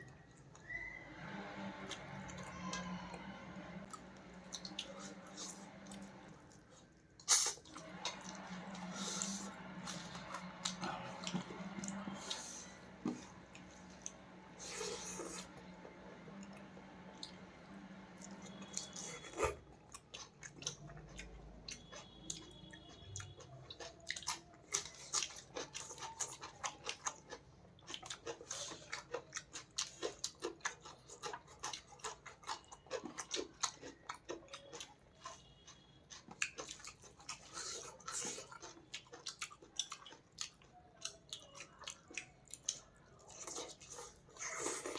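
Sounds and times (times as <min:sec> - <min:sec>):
low steady hum: 0:00.0 - 0:23.0
person chewing food: 0:01.7 - 0:44.9.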